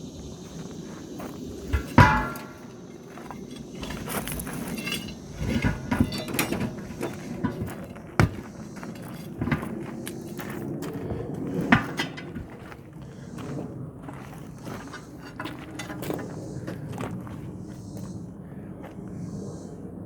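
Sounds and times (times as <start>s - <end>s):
metal clanks and knocks: 1.5s - 10.3s, 11.0s - 12.9s, 14.8s - 16.6s
ringing metallic strike: 1.7s - 6.8s.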